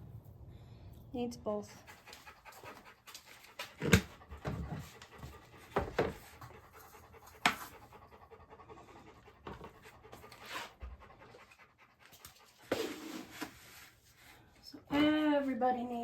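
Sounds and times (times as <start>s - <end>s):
dog panting: 1.5s - 14.0s.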